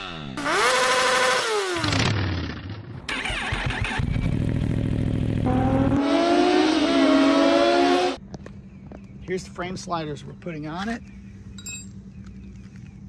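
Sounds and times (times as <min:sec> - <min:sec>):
motorcycle engine revving: 0:00.0 - 0:08.2.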